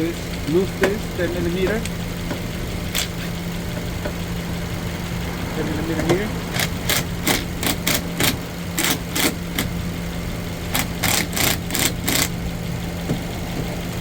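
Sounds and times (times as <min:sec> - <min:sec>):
car engine idling: 0:00.0 - 0:14.0
hand tool clicking: 0:06.6 - 0:09.7, 0:10.7 - 0:12.3.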